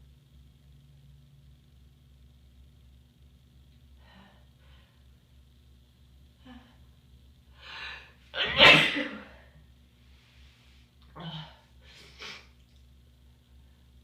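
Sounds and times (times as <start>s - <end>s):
person sneezing: 8.4s - 9.4s.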